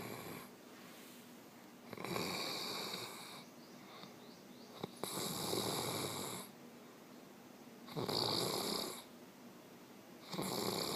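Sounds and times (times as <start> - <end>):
man snoring: 0.0 - 0.5, 1.9 - 3.4, 5.0 - 6.5, 7.9 - 9.1, 10.2 - 10.9
quiet breathing: 0.0 - 8.1.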